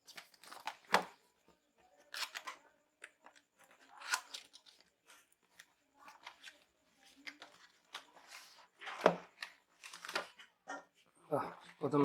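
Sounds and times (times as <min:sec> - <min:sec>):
packaging rustling and scraping: 0:03.3 - 0:11.0.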